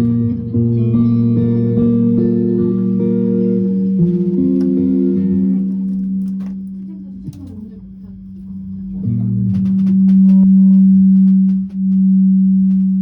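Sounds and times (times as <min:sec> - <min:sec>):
loud low guitar note: 0:00.0 - 0:07.6
guitar notes ringing: 0:00.0 - 0:13.0.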